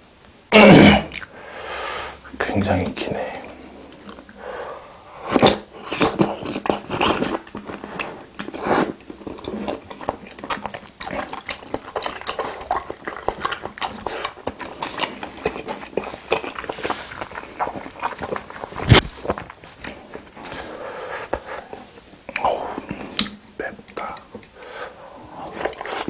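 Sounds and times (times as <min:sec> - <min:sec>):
wet chewing: 0:01.1 - 0:01.4, 0:03.3 - 0:26.0.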